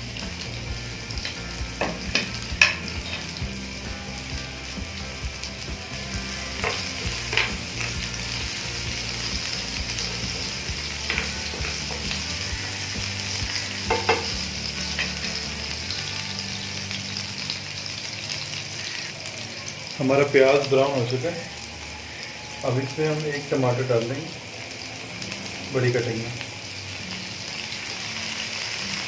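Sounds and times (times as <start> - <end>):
onions sizzling in oil: 0.0 - 29.0
utensil clicking against pan: 1.2 - 3.5, 6.6 - 8.1, 10.1 - 12.3, 13.4 - 15.4.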